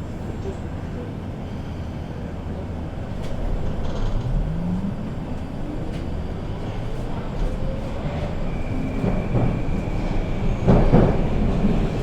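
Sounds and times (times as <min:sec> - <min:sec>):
train rumble: 0:00.0 - 0:12.0
traction drive whine: 0:02.7 - 0:12.0.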